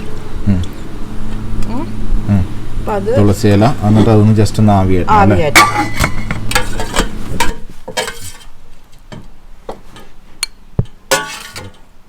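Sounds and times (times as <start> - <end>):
clinks of metal and glassware: 5.6 - 8.5, 10.0 - 11.8.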